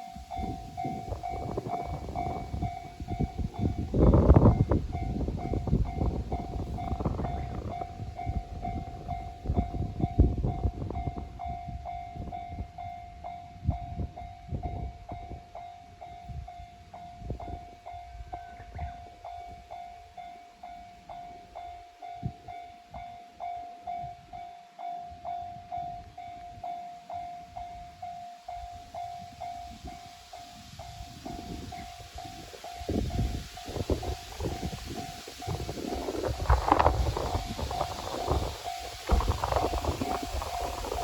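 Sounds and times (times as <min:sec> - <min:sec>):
railcar rumbling and wheel clatter: 0:00.0 - 0:41.0
railroad crossing bell ringing: 0:00.0 - 0:41.0.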